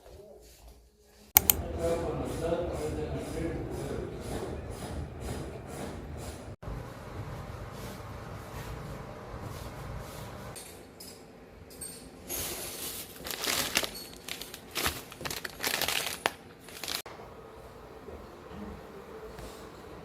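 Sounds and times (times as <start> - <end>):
wrapping crinkling and rustling: 12.6 - 17.1.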